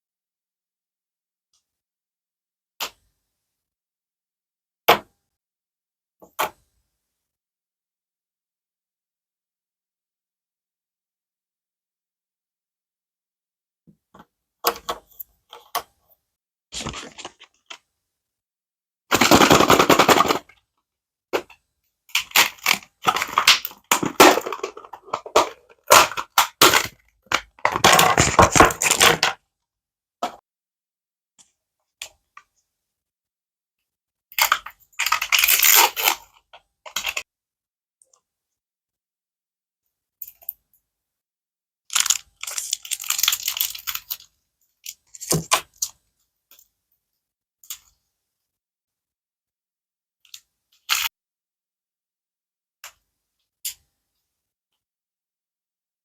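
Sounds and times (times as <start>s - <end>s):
wrappers crinkling and tearing: 35.0s - 36.2s, 41.9s - 44.2s.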